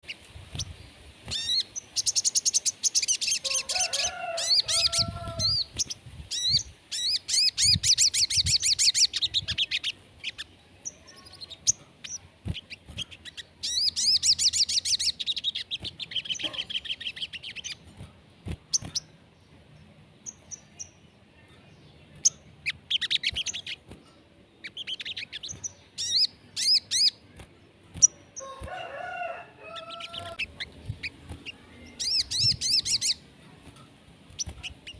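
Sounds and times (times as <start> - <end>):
songbird trilling: 0.1 - 17.8, 22.2 - 23.9, 24.5 - 27.2, 28.0 - 33.2.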